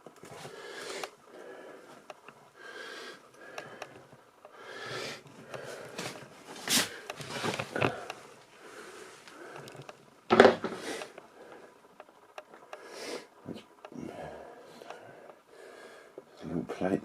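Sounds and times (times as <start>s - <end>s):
person breathing closely: 0.4s - 9.9s, 12.7s - 13.4s, 14.0s - 16.3s.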